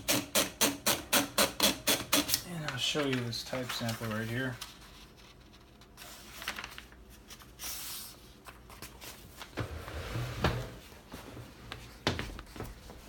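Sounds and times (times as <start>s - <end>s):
paper rustle: 2.5s - 9.6s.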